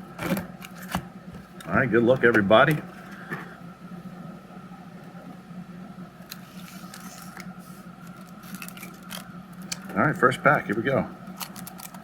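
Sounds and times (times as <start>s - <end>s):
low electrical hum: 0.0s - 12.0s
foil pack rustling: 6.4s - 12.0s.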